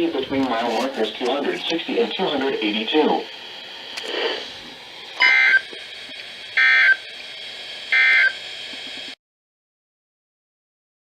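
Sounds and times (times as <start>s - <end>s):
steady receiver hiss: 0.0s - 9.2s
warbling digital tone bursts: 5.2s - 5.8s, 6.6s - 7.0s, 7.9s - 8.4s.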